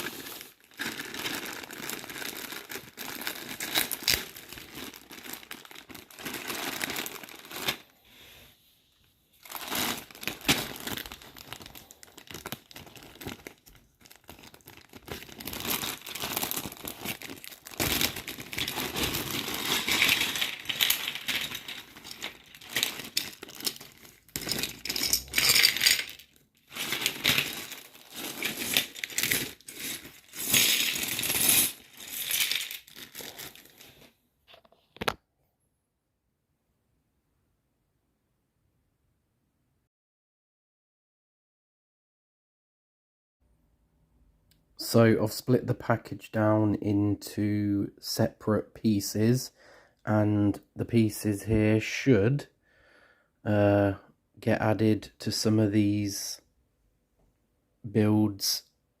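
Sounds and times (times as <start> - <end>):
plastic bags crinkling: 0.0 - 8.0, 9.4 - 34.2
plastic bricks clinking: 9.5 - 33.9.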